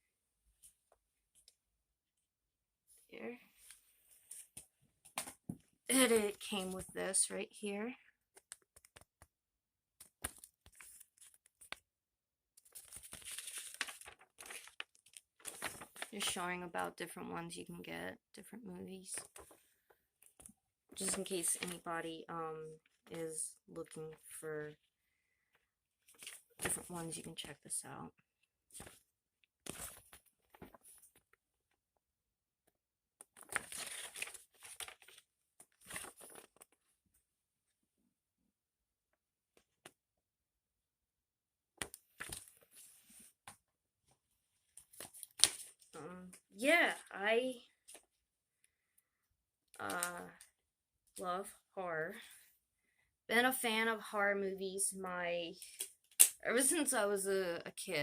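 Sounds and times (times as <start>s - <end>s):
paper crinkling and rustling: 10.0s - 11.8s, 12.6s - 16.4s, 26.1s - 27.1s, 29.6s - 31.3s, 33.3s - 36.9s, 41.8s - 43.4s, 44.7s - 45.9s
packaging crinkling: 12.7s - 16.1s.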